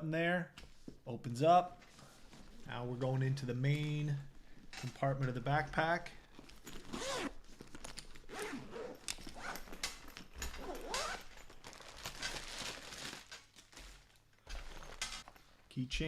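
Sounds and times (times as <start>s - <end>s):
zipper being pulled open: 6.6s - 12.2s.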